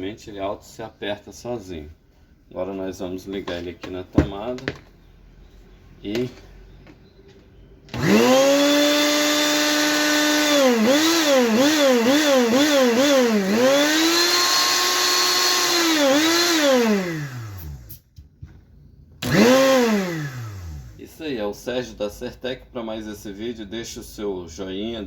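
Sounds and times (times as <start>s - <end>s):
blender motor whining: 7.9s - 18.0s, 19.2s - 21.0s.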